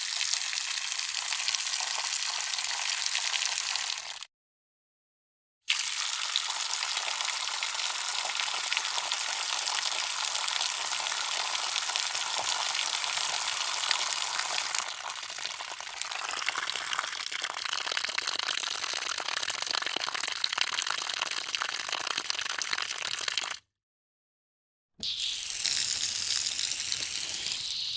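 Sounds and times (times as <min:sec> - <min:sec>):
water running from faucet: 0:00.0 - 0:04.2, 0:05.7 - 0:18.5, 0:25.0 - 0:27.9.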